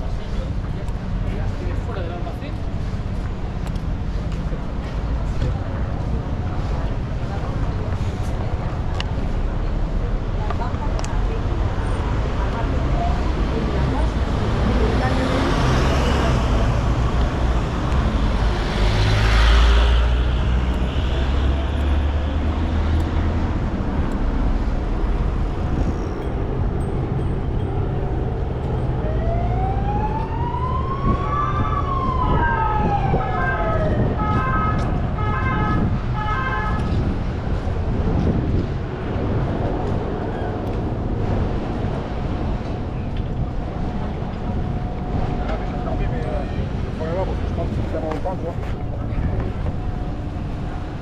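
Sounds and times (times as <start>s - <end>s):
road traffic: 0.0s - 51.0s
heavy vehicle passing: 11.3s - 51.0s
emergency vehicle siren: 27.6s - 37.0s.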